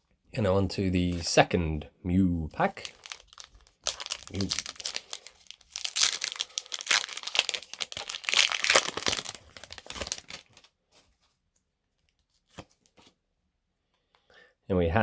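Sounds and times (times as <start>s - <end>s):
foil wrapper tearing and crinkling: 2.7s - 10.7s.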